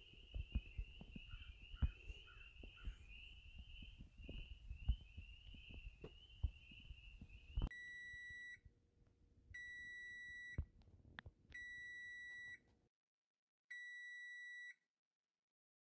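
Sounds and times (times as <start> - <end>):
electronic alarm beeping: 0.0 - 8.6, 9.6 - 10.6, 11.6 - 12.6, 13.7 - 14.8.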